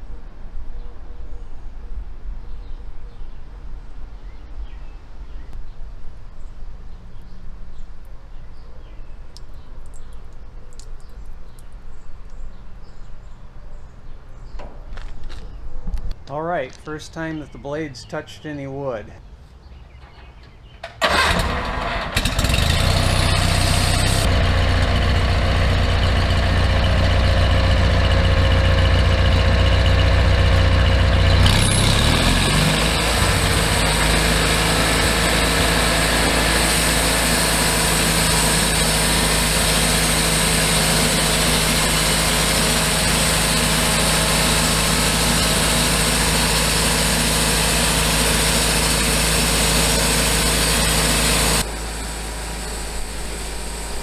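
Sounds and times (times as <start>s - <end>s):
sawmill engine under load: 20.0s - 54.0s
bandsaw blade cutting wood: 21.3s - 24.3s, 31.0s - 51.6s.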